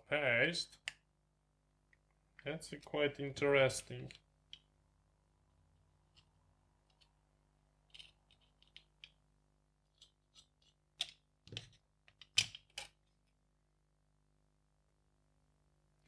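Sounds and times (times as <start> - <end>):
plastic parts clicking and tapping: 7.9 - 9.2.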